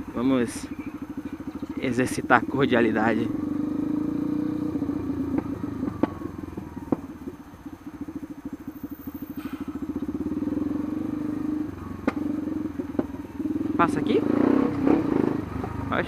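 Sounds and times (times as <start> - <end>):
motorcycle engine at low revs: 0.0 - 16.0.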